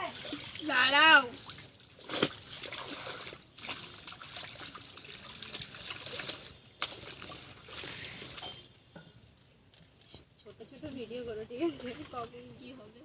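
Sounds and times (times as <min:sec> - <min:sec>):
water trickling and splashing: 0:00.0 - 0:10.1.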